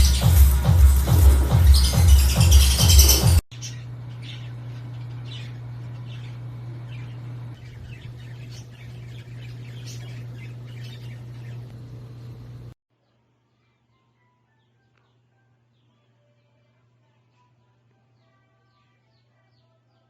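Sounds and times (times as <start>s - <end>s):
small birds chirping: 0.0s - 13.7s.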